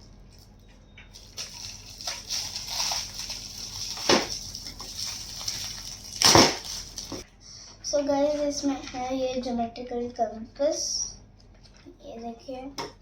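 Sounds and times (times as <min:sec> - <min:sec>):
wrapping paper rustling: 0:01.1 - 0:07.2.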